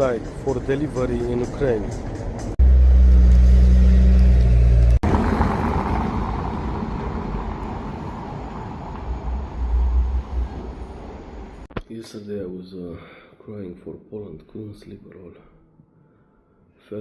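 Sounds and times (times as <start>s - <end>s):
road vehicles rumbling: 0.0s - 11.7s
traffic noise: 0.0s - 11.7s.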